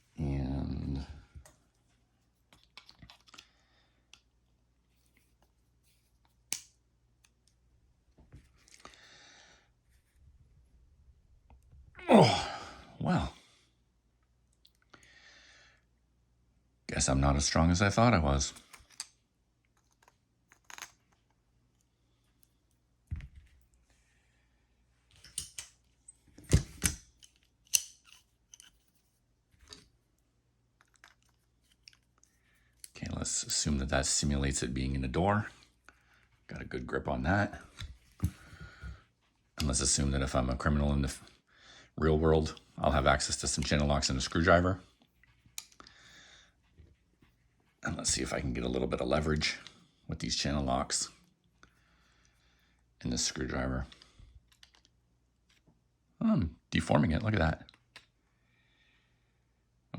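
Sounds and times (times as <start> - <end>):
metal tools clicking and knocking: 25.2 - 25.8, 26.4 - 28.8.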